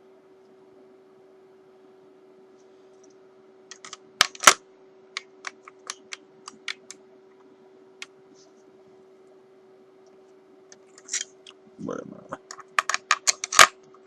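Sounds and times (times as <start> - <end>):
faint steady hum: 0.0 - 14.0
metal parts clicking and tapping: 12.5 - 13.7.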